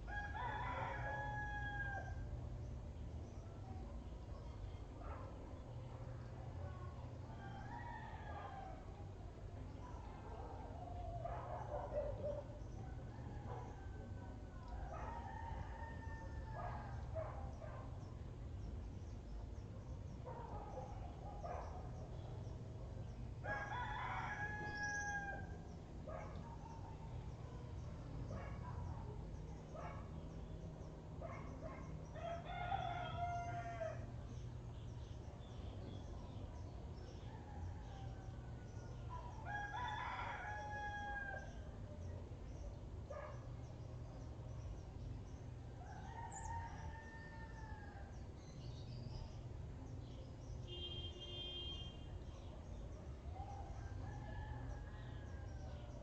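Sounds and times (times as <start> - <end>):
rooster crowing: 0.1 - 2.3, 14.9 - 16.6, 23.4 - 25.6, 32.2 - 34.1, 39.4 - 41.6, 46.0 - 48.1.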